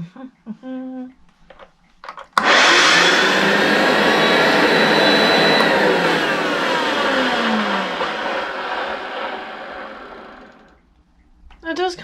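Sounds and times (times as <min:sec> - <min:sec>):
vacuum cleaner rushing whoosh: 0:02.4 - 0:10.7
vacuum cleaner switch click: 0:02.4 - 0:10.8.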